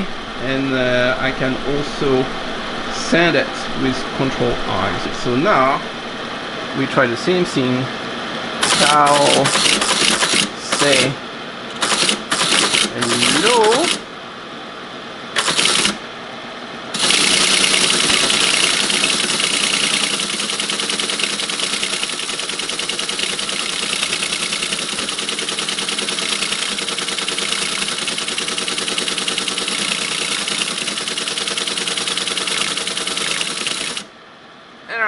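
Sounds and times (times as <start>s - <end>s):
teleprinter clattering: 8.6s - 14.0s, 15.4s - 16.0s, 17.0s - 34.1s.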